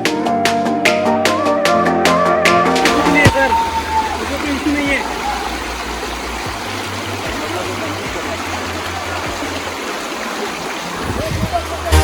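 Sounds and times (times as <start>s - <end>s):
rushing stream water: 2.8s - 12.0s.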